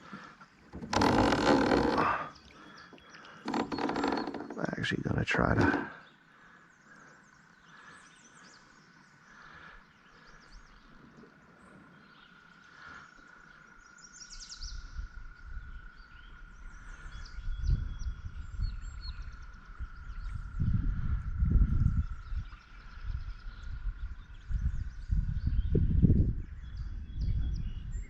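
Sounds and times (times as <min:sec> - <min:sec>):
small birds chirping: 0:00.0 - 0:20.9
low microphone rumble: 0:16.6 - 0:28.0.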